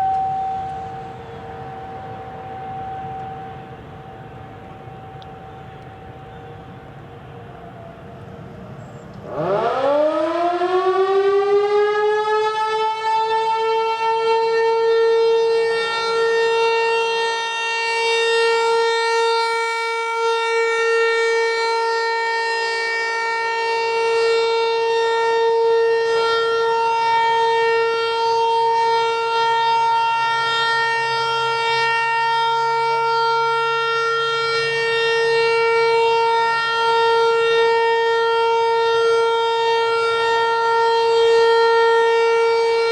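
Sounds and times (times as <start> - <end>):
outdoor warning siren: 0.0 - 42.9.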